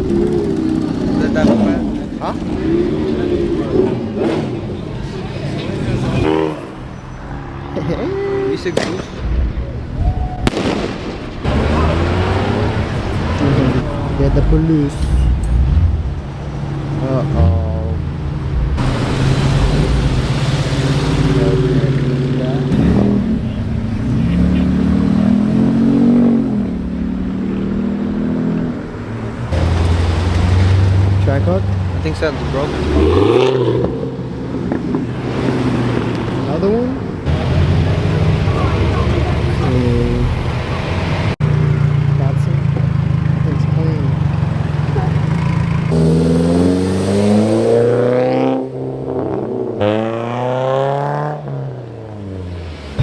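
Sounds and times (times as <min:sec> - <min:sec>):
deep engine drone: 0:00.0 - 0:04.1, 0:11.5 - 0:27.3
car engine revving: 0:00.0 - 0:53.0.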